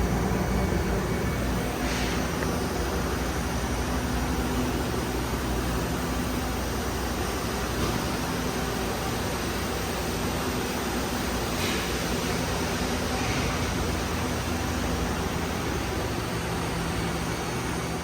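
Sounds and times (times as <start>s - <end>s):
machinery hum: 0.0s - 18.0s
hiss: 1.8s - 2.4s.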